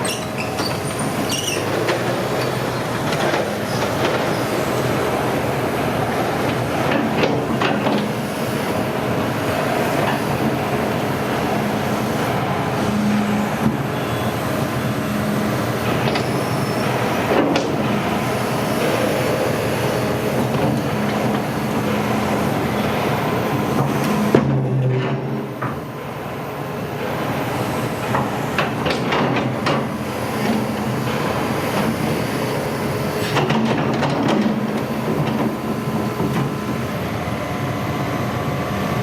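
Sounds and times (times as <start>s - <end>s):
diesel engine droning: 2.0s - 24.9s.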